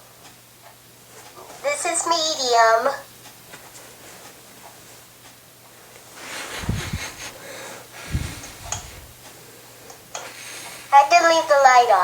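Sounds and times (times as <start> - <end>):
ceiling fan running: 0.0 - 12.0
low thumps on microphone: 6.6 - 7.4, 8.0 - 9.2.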